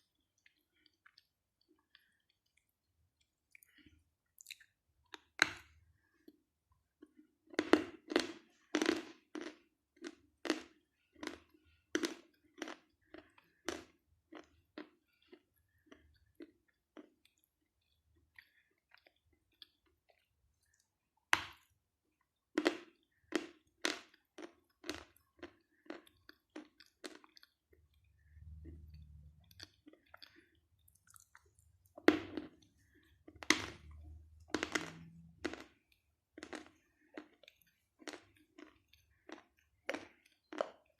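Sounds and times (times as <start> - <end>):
crunchy chewing of chalk: 7.0 - 20.9, 22.6 - 40.9.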